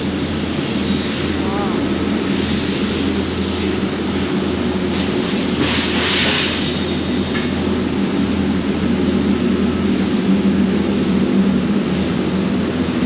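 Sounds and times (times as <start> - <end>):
factory machine hum: 0.0 - 13.0.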